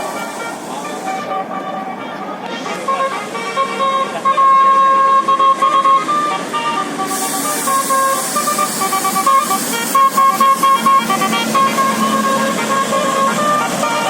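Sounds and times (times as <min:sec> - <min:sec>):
steady high hiss: 0:00.0 - 0:02.0, 0:07.0 - 0:14.0
musical bus horn tune: 0:00.0 - 0:14.0.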